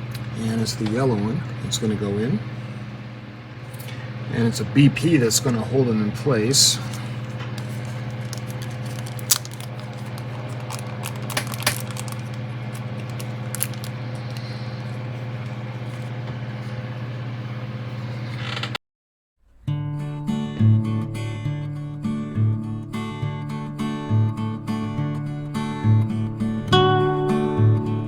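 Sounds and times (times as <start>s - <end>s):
steady low hum: 0.0s - 18.5s
plastic parts clicking: 7.6s - 14.5s.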